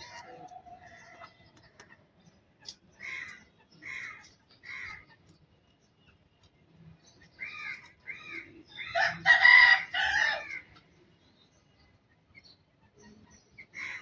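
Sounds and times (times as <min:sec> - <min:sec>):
rooster crowing: 0:09.0 - 0:10.6.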